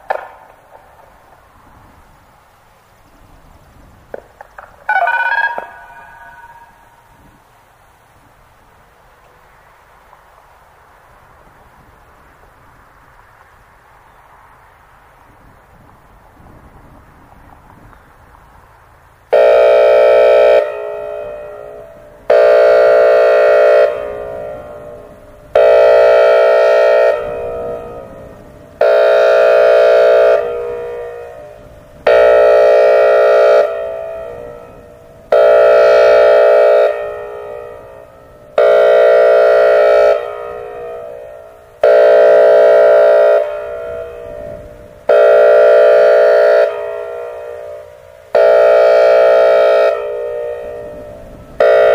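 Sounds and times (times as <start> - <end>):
warning siren horn blasts: 4.8 - 8.0, 19.3 - 51.9.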